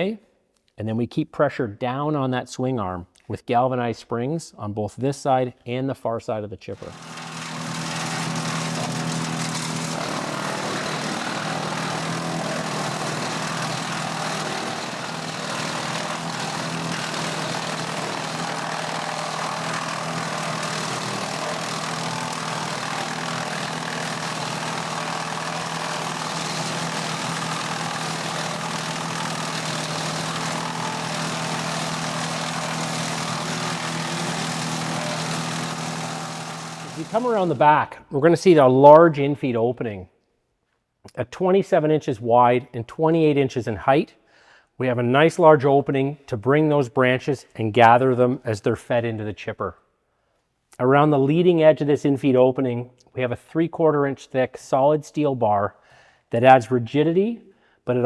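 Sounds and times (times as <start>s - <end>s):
wood chipper running: 6.8s - 38.0s.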